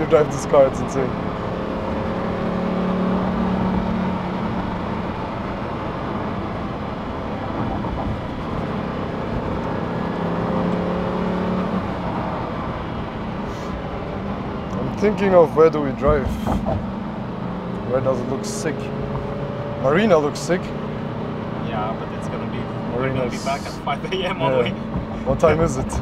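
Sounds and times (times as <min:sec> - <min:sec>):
car engine cruising: 0:00.0 - 0:26.0
road and tyre noise: 0:00.0 - 0:26.0.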